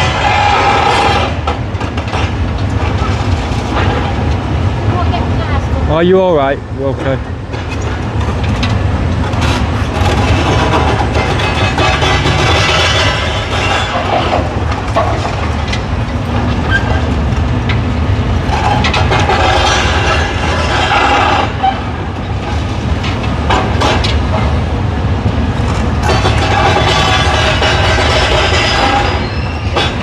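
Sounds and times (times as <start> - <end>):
excavator engine under load: 7.4 - 30.0.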